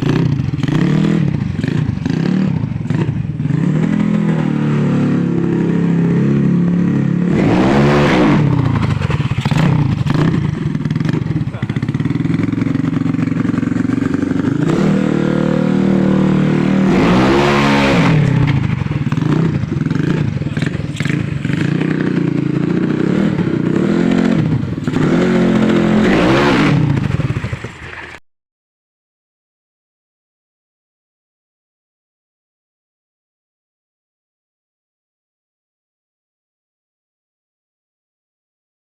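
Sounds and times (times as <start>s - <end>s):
scooter engine revving: 0.0s - 28.2s.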